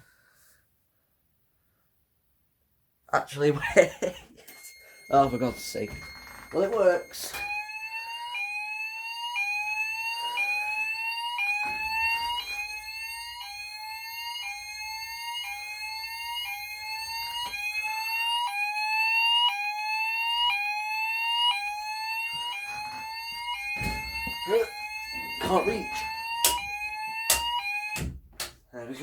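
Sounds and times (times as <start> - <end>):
fire alarm rising sweep tone: 3.6 - 28.2
steady high tone: 3.7 - 28.1.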